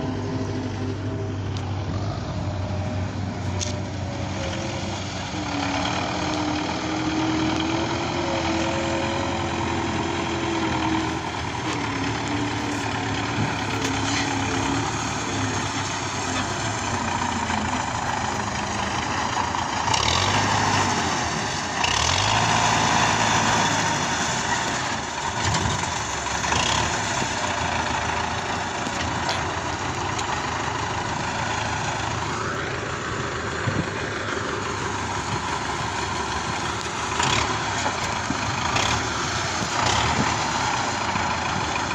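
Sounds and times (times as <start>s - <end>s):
tractor diesel engine running: 0.0s - 41.9s.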